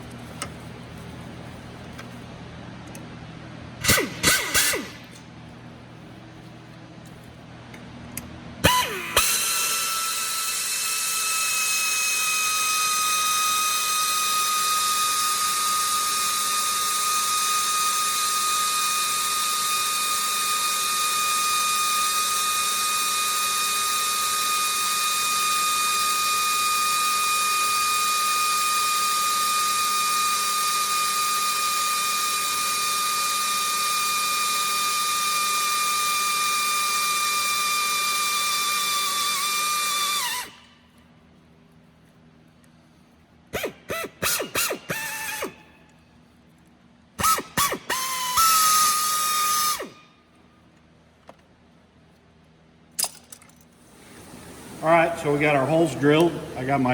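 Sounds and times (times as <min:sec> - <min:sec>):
electric drill whining: 0:03.8 - 0:05.2, 0:08.6 - 0:40.7, 0:43.6 - 0:45.7, 0:47.2 - 0:50.0.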